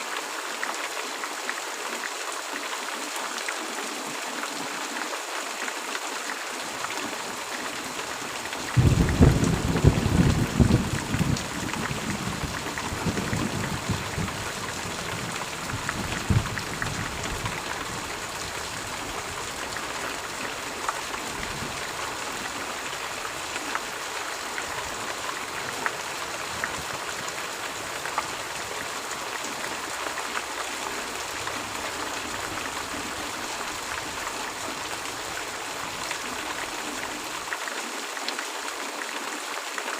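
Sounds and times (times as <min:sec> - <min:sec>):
steady rain: 0:00.0 - 0:39.9
thunder clap rumbling: 0:08.8 - 0:17.6.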